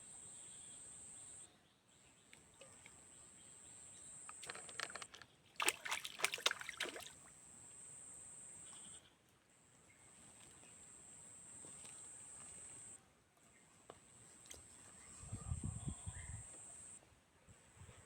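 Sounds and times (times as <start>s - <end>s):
water sloshing and splashing: 4.3s - 7.3s.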